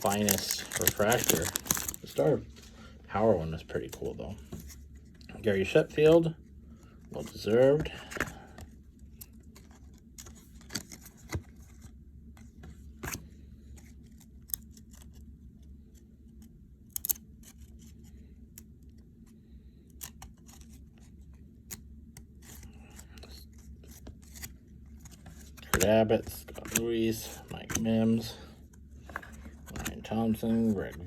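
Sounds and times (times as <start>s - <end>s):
cards and wrapper crinkling: 0.0s - 2.3s, 22.5s - 27.9s, 29.0s - 30.8s
faint steady hum: 0.0s - 31.0s.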